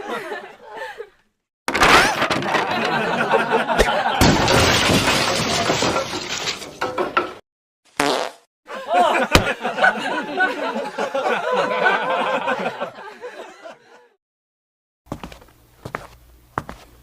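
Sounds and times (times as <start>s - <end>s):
comic fart sound effects: 7.9s - 8.5s.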